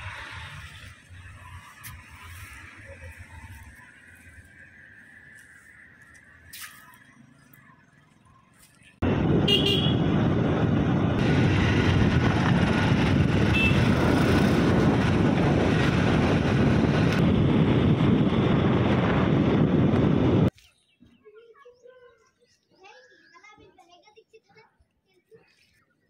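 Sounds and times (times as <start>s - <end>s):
road and traffic noise: 0.0s - 26.0s
horn toot: 9.4s - 10.1s, 13.5s - 13.9s.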